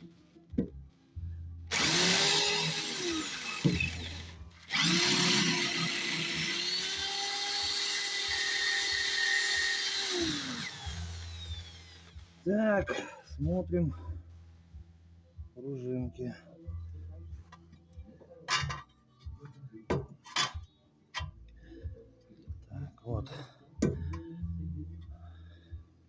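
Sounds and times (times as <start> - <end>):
electric drill boring metal: 1.7 - 12.2.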